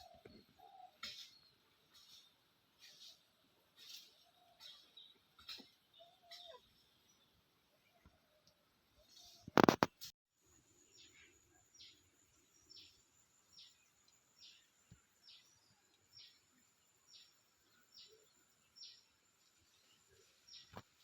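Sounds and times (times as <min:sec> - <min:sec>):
bird chirping: 0:00.0 - 0:09.8, 0:10.7 - 0:21.0
thin steady hiss: 0:10.4 - 0:21.0.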